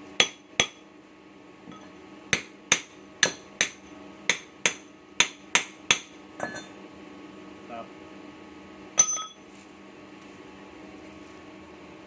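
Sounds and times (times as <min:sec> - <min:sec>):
hammer striking steel: 0:00.2 - 0:00.8, 0:01.7 - 0:06.7, 0:09.0 - 0:09.4.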